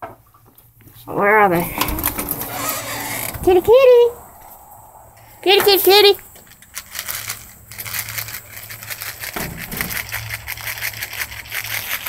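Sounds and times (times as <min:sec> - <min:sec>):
crunching and crinkling: 0:06.3 - 0:12.0.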